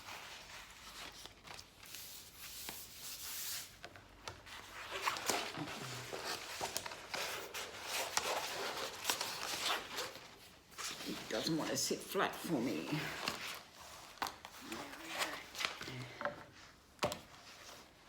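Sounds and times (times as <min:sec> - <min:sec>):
canvas rustling and crinkling: 0:04.4 - 0:15.8.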